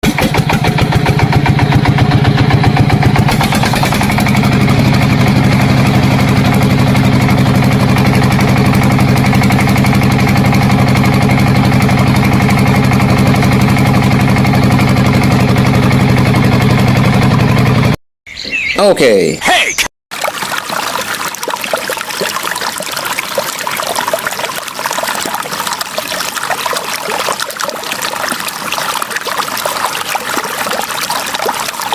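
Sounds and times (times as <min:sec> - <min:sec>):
engine idling: 0:00.0 - 0:18.0.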